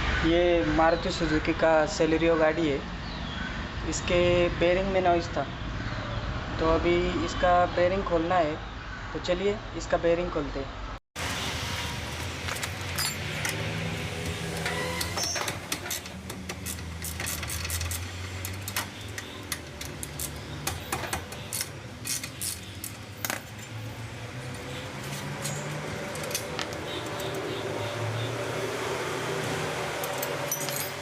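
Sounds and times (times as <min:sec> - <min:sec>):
metal tools clinking: 0:12.5 - 0:27.6, 0:29.4 - 0:31.0.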